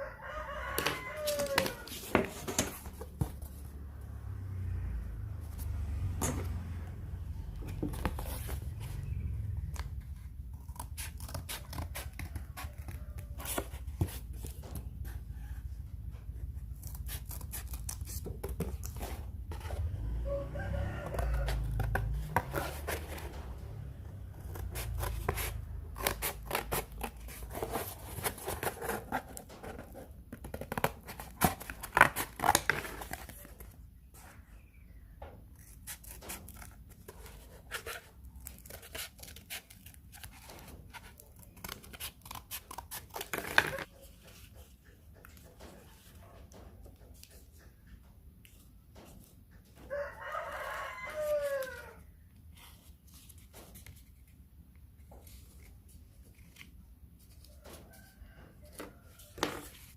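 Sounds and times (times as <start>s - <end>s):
scissors cutting cardboard: 0.5s - 3.7s, 7.6s - 15.6s, 16.3s - 19.9s, 21.0s - 34.3s, 35.5s - 47.7s.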